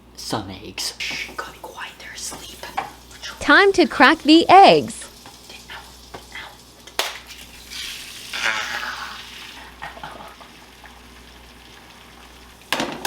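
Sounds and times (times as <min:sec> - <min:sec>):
egg sizzling in frying pan: 0:00.8 - 0:13.0
egg cracking against pan: 0:06.0 - 0:11.0.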